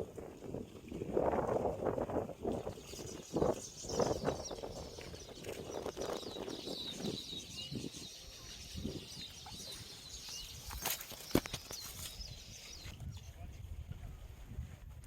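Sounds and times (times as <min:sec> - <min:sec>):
small birds chirping: 0:02.6 - 0:13.5.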